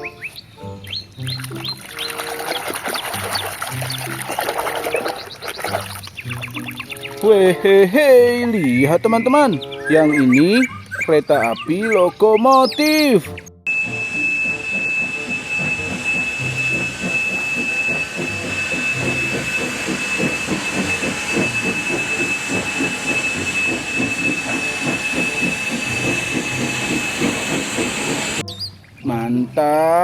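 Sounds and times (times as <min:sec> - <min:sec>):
steady high tone: 0:13.7 - 0:28.4
train wheels clattering over rails: 0:13.7 - 0:28.4.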